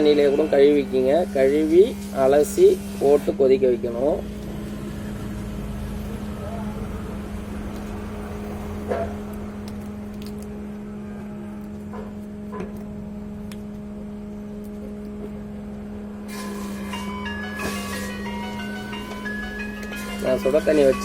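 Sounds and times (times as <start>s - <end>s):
steady low hum: 0.0s - 21.0s
music with stepped notes: 16.9s - 21.0s.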